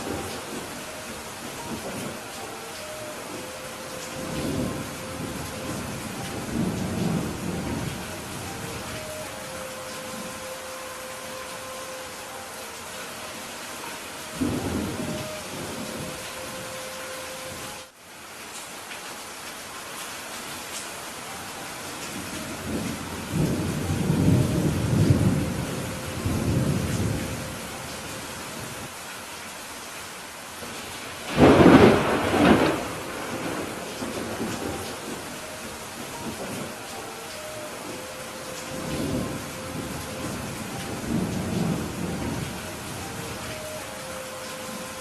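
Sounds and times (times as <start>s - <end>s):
thunder rumbling: 0.0s - 12.3s, 13.8s - 16.8s, 22.2s - 28.8s, 31.1s - 45.0s
heavy rain: 0.0s - 45.0s.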